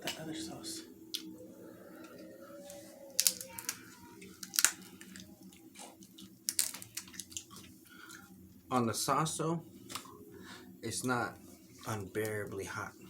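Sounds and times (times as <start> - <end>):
shellfish cracking and clicking: 3.2 - 8.2.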